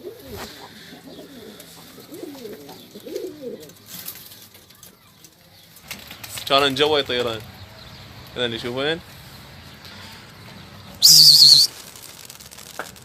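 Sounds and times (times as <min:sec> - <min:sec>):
pigeons cooing: 0:00.0 - 0:04.4.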